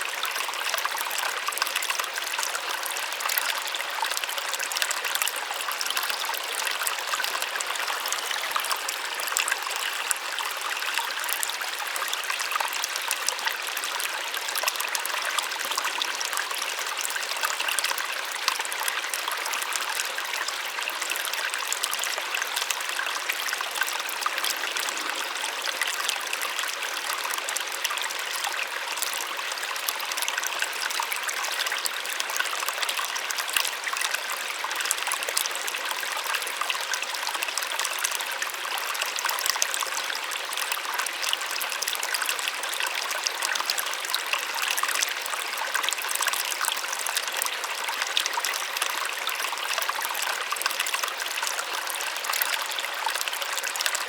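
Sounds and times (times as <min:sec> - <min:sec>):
small waterfall splashing: 0:00.0 - 0:54.0.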